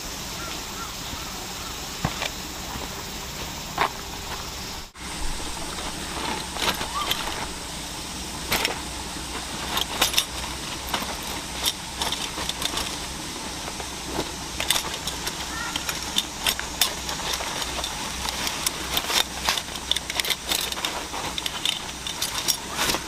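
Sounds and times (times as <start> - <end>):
steady background hiss: 0.0 - 23.0
light clicks and clinks: 8.5 - 23.0.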